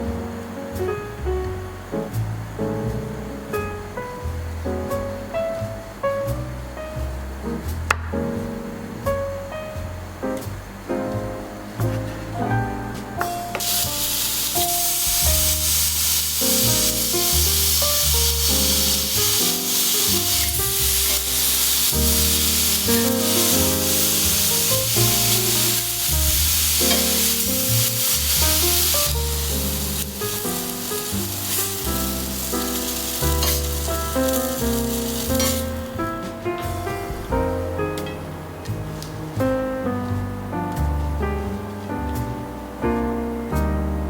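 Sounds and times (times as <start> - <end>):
background music with piano: 0.0 - 44.0
food sizzling in a pan: 13.5 - 35.9.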